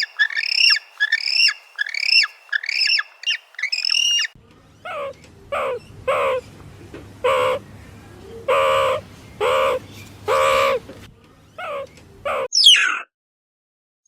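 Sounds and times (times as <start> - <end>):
animal calling: 0.0 - 6.4, 8.5 - 10.8, 11.6 - 13.1.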